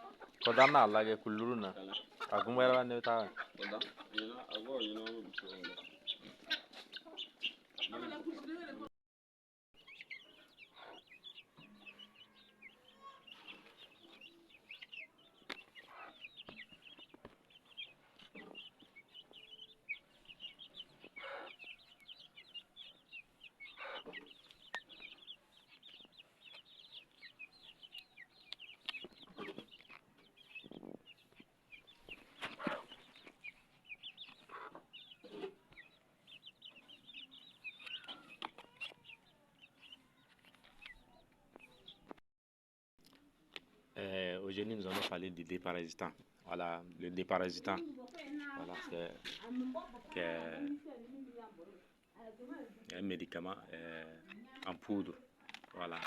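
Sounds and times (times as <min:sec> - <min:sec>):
high-pitched chick peeps: 0:00.0 - 0:08.2, 0:09.8 - 0:42.1
chickens clucking: 0:00.0 - 0:08.9, 0:09.8 - 0:42.2, 0:44.6 - 0:56.0.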